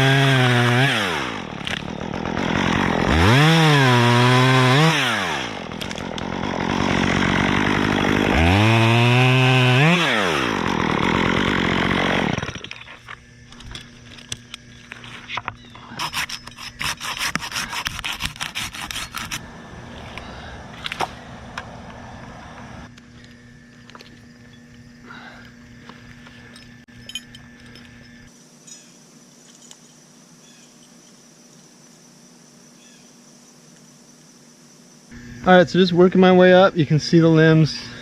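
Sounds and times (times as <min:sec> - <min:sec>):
chainsaw revving and cutting wood: 0:00.0 - 0:12.8, 0:16.0 - 0:22.9.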